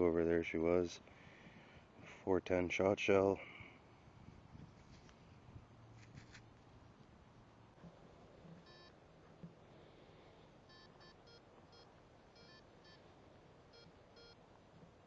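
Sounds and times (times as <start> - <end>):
metal detector beeps: 8.6 - 9.0, 10.7 - 13.0, 13.7 - 14.4.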